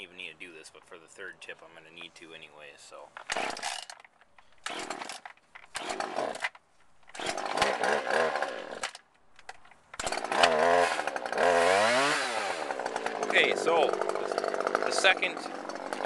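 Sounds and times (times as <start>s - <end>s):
chainsaw starter pulls: 3.1s - 16.0s
chainsaw engine running: 3.3s - 3.9s, 4.6s - 6.5s, 7.1s - 9.0s, 10.0s - 16.0s.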